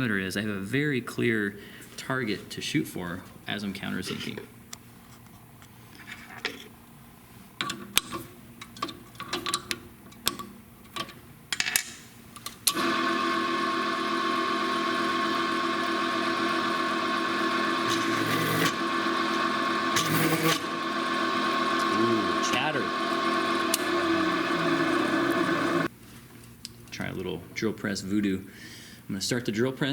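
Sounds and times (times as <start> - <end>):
drill press motor whining: 12.7 - 25.9.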